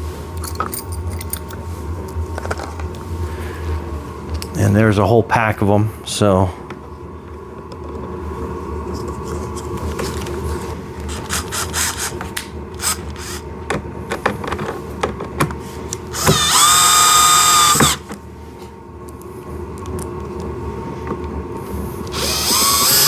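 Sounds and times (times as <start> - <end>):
power drill driving screw: 11.1 - 12.1, 12.8 - 13.4, 16.1 - 18.0, 22.1 - 23.0.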